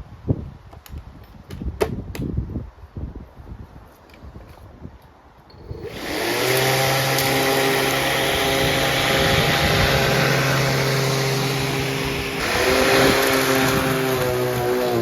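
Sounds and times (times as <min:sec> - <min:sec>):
electric lawn mower humming: 0:05.6 - 0:15.0.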